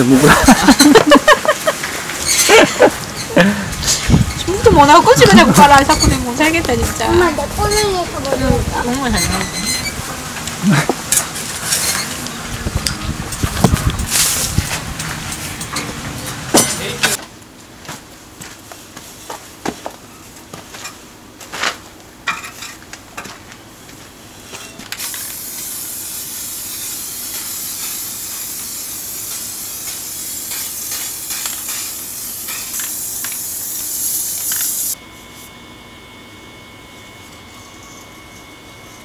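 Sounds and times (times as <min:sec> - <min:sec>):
camping stove sizzling hiss: 0:00.4 - 0:03.9, 0:25.0 - 0:35.0.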